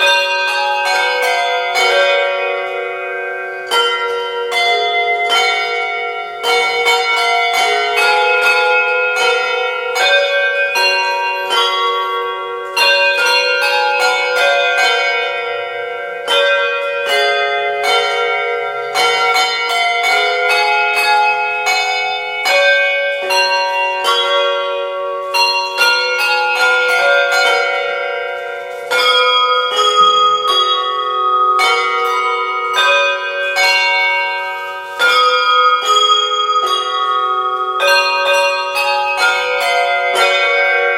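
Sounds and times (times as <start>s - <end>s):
handbells playing a carol: 0.0s - 40.9s.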